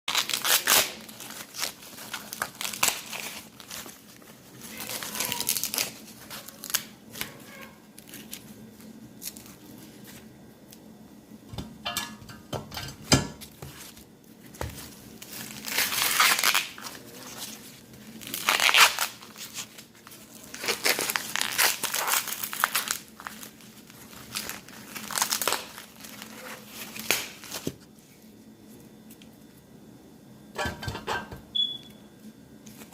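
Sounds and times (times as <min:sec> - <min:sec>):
corn husks tearing: 0:00.1 - 0:08.5, 0:15.2 - 0:27.7.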